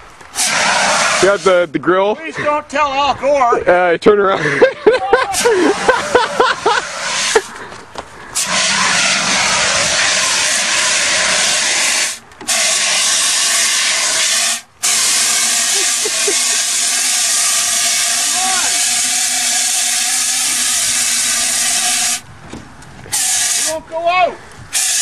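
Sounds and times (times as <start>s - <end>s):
fire extinguisher hissing: 0.3s - 1.6s, 5.3s - 7.6s, 8.3s - 22.3s, 23.1s - 23.8s, 24.7s - 25.0s.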